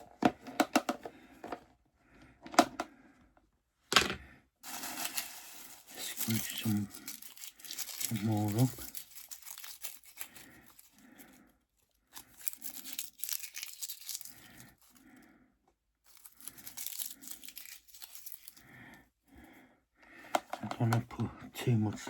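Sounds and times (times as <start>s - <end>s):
dry leaves scrunched in hands: 4.6s - 11.4s, 12.1s - 15.0s, 16.1s - 18.6s.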